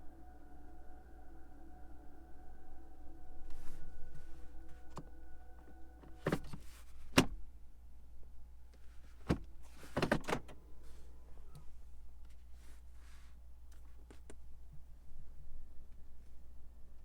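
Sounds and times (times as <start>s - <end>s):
clicks and knocks of car controls: 9.2s - 10.6s.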